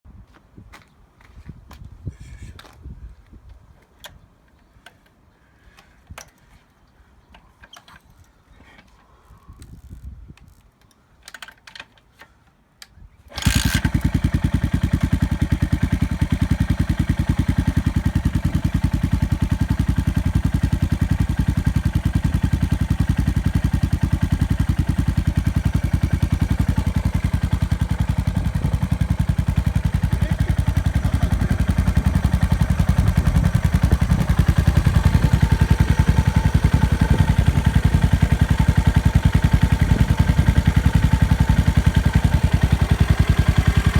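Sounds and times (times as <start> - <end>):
starter clicks: 3.8 - 14.8
motorcycle engine idling: 13.3 - 43.9.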